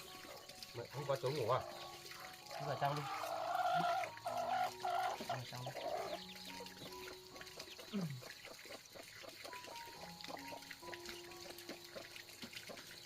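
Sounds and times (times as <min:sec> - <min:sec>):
birds chirping: 0:00.0 - 0:13.0
soft background music: 0:00.0 - 0:13.0.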